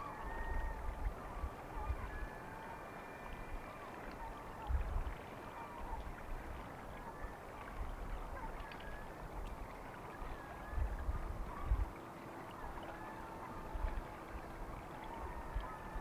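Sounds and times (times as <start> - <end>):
wind buffeting microphone: 10.3 - 12.0.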